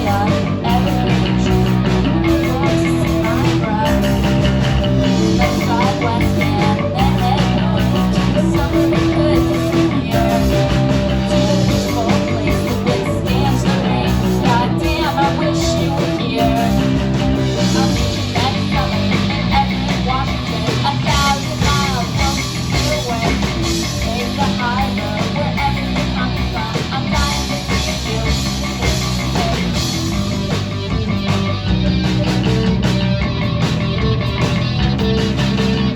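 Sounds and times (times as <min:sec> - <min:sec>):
bass guitar: 0:00.0 - 0:35.9
distorted electric guitars: 0:00.0 - 0:35.9
drums: 0:00.0 - 0:35.9.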